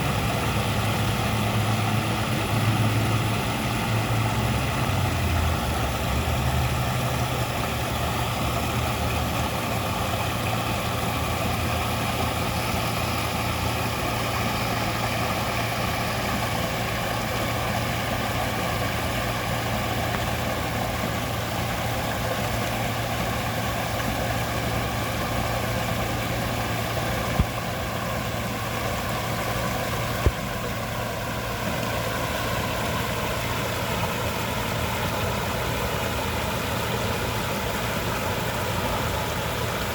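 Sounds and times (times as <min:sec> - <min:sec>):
waterfall rushing: 0:00.0 - 0:39.9.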